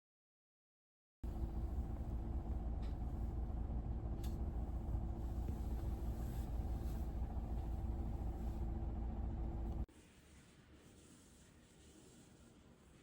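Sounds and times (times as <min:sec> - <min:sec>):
faint hum: 0:01.2 - 0:09.9
low mechanical rumble: 0:01.2 - 0:09.9.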